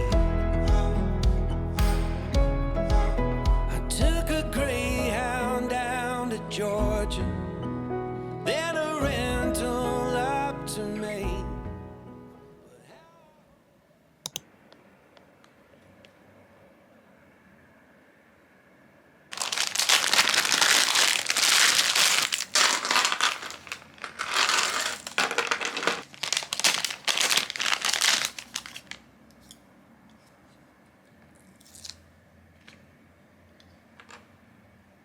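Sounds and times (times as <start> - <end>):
packaging crinkling and rustling: 19.3 - 29.0.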